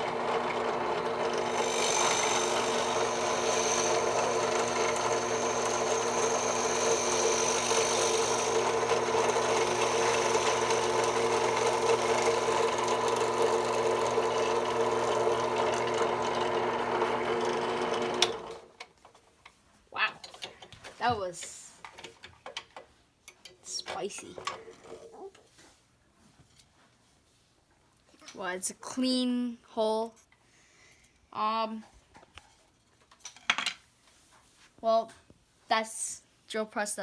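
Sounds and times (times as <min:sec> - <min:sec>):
drill bit cutting wood: 0:00.0 - 0:18.6
drill press motor hum: 0:00.0 - 0:18.7.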